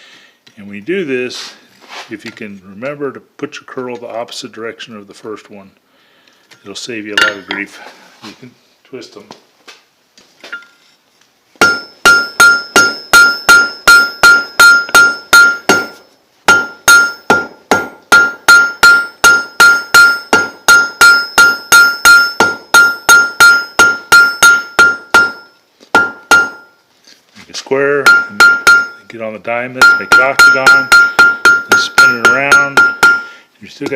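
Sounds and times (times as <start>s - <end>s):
hammer ringing on anvil: 11.6s - 26.8s, 28.0s - 29.0s, 29.8s - 33.9s.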